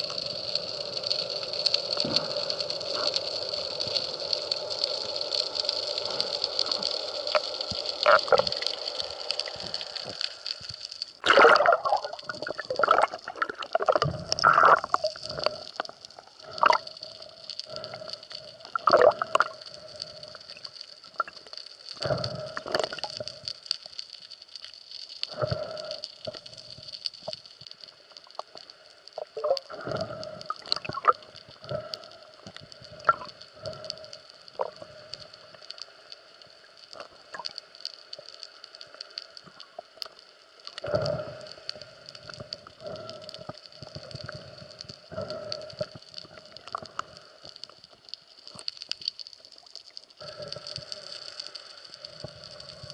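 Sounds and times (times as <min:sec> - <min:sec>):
faint steady hum: 0:00.0 - 0:52.9
water gurgling and sloshing: 0:06.1 - 0:21.3.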